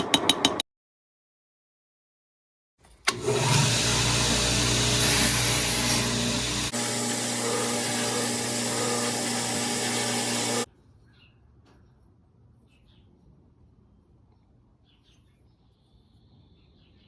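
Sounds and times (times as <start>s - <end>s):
power tool grinding: 3.1s - 10.7s.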